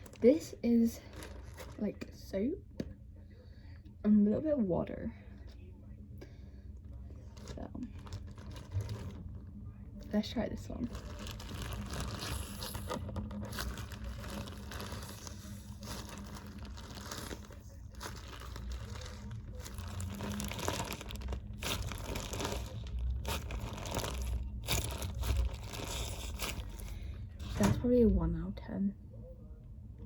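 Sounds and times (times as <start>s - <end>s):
plastic bag crinkling and squelching: 0.0s - 2.1s, 7.0s - 27.9s.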